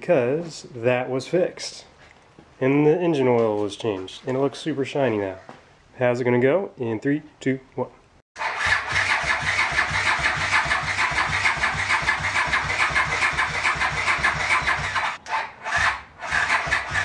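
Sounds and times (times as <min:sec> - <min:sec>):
motorcycle engine cranking: 0:08.4 - 0:17.0.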